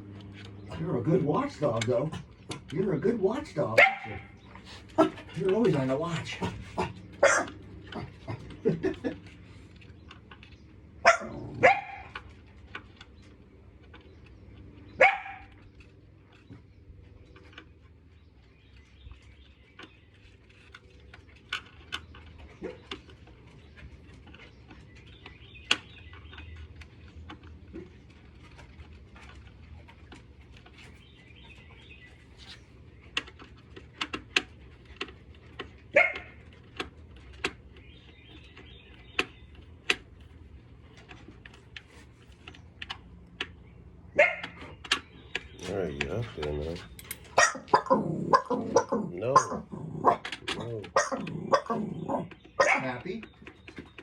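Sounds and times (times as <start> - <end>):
dog barking: 3.8 - 4.4, 6.4 - 8.4, 11.0 - 12.2, 15.0 - 15.6, 35.9 - 36.4, 44.2 - 44.6, 47.3 - 53.0.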